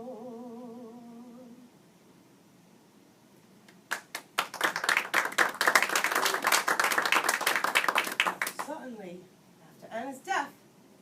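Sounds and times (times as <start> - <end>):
audience clapping: 3.7 - 8.8.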